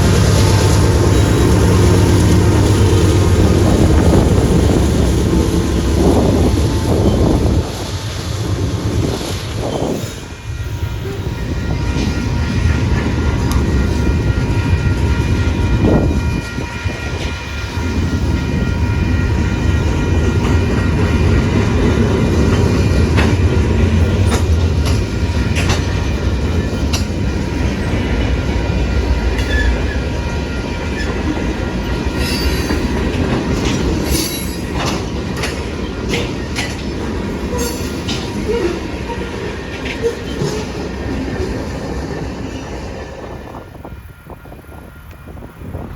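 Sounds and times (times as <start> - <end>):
train rumbling past: 0.0 - 45.9
wheels clicking over rail joints: 19.8 - 28.4, 30.8 - 42.8.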